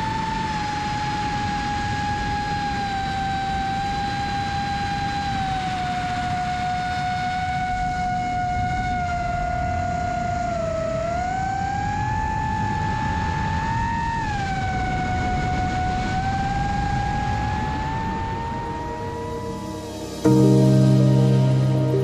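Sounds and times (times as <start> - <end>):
wind rumble on microphone: 0.0 - 22.0
drone motors whining: 16.0 - 20.7.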